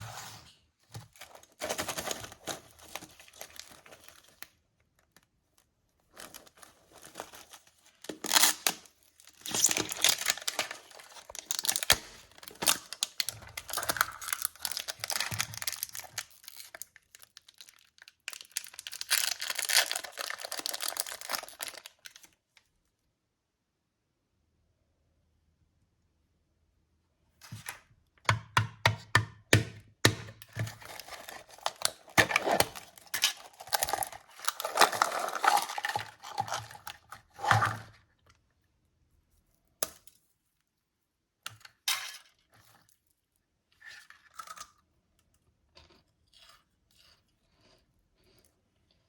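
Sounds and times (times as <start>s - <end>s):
packaging rustling: 0.0s - 5.3s, 6.1s - 22.3s, 30.4s - 37.9s
plastic packaging tearing and crinkling: 1.0s - 5.2s, 6.1s - 22.4s, 30.4s - 38.0s.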